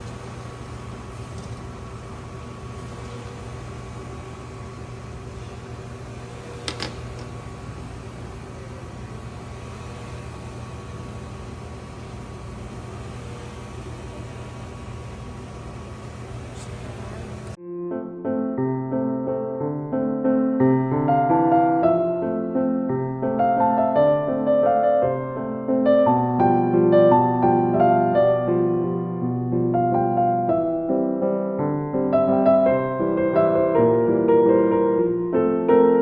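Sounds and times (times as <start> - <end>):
microwave oven humming: 0.0 - 17.6.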